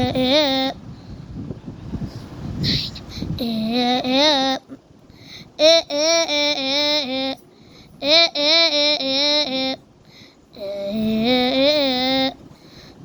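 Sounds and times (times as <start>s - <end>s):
child-like voice singing: 0.0s - 0.8s, 2.7s - 4.8s, 5.6s - 7.4s, 8.0s - 9.8s, 10.6s - 12.4s.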